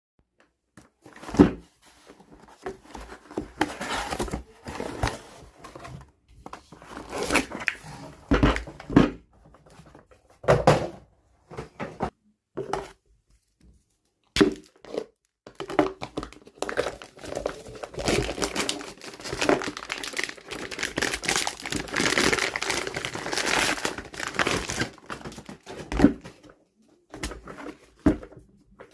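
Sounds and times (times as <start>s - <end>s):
cardboard rustling: 0.8s - 7.6s
plastic wrap crinkling: 16.5s - 25.7s.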